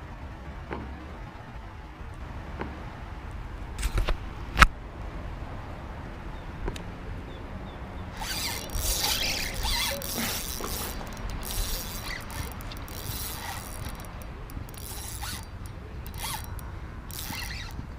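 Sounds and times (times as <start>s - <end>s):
fishing reel ratcheting: 8.2s - 17.9s.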